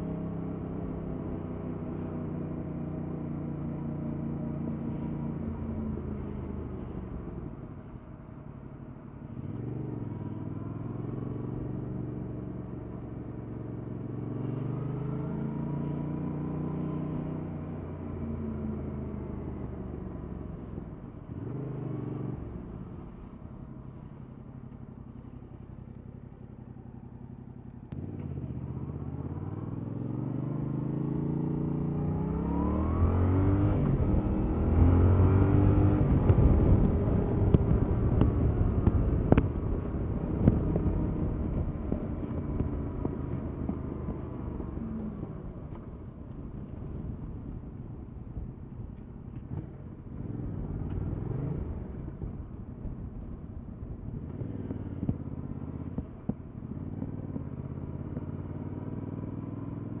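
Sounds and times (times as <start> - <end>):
motorcycle engine accelerating: 9.3 - 60.0.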